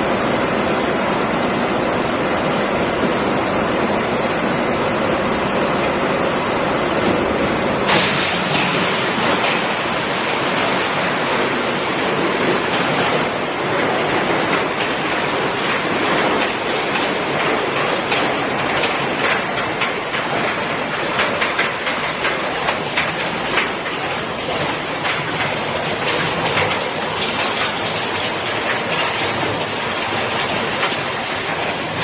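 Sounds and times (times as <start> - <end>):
shredder grinding metal and plastic: 25.4 - 32.0.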